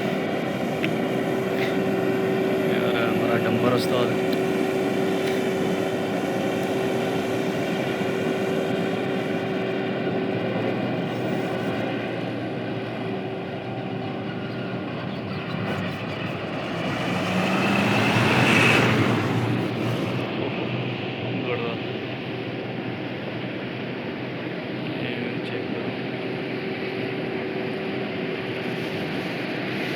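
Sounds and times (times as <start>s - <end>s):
diesel engine running: 0.0s - 29.9s
rushing noise: 13.0s - 20.4s.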